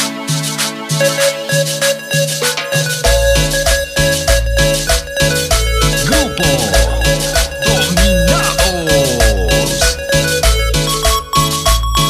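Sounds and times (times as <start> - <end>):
dance music with heavy bass beat: 5.3 - 10.6.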